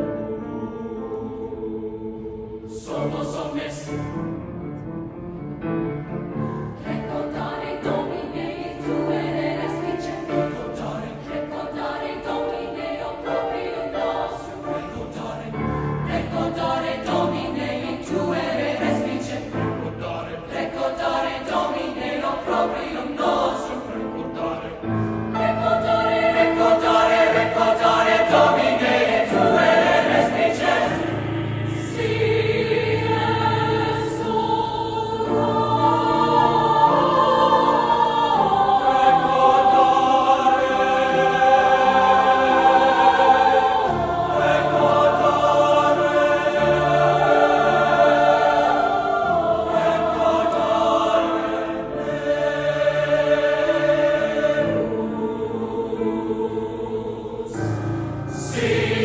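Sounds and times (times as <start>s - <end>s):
choir singing held chords: 0.0s - 59.0s.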